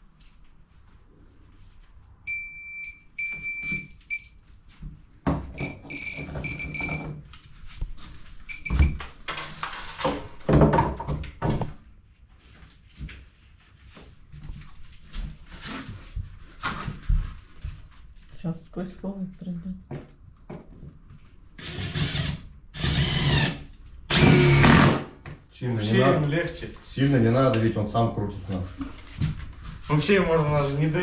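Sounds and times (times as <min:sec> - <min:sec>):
impact driver whining: 0:21.6 - 0:25.2.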